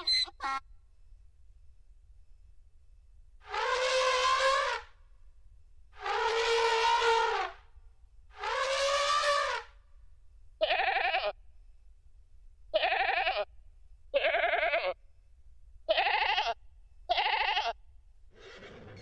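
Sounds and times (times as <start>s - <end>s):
sheep bleat sample: 10.6s - 11.4s, 12.7s - 13.5s, 14.1s - 15.0s, 15.9s - 17.8s.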